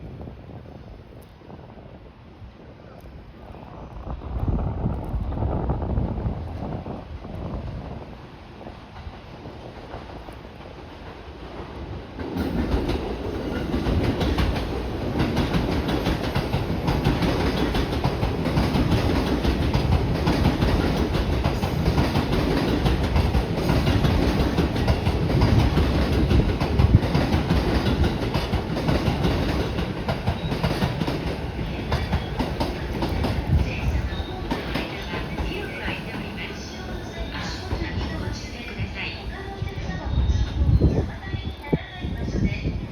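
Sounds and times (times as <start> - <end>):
train wheels clacking over rail joints: 12.2 - 36.2.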